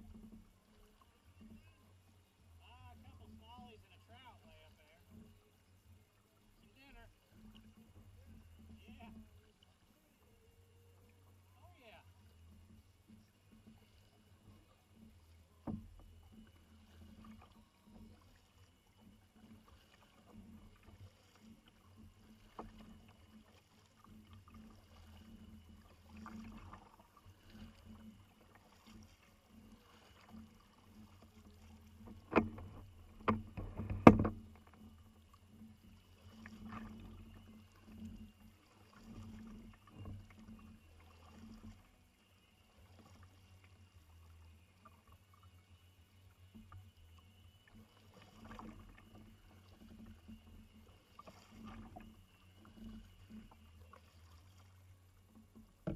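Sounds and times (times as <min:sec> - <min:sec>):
water and kayak hull noises: 0:00.0 - 0:55.9
sharp knocks against hull: 0:15.6 - 0:16.0, 0:32.1 - 0:34.8.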